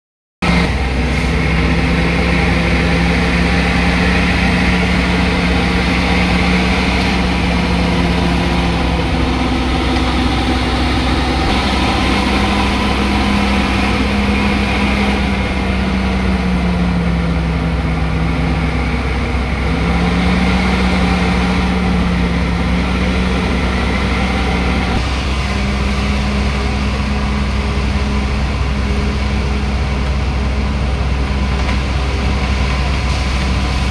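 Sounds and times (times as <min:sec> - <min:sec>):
bulldozer diesel engine rumbling: 0:00.4 - 0:33.9.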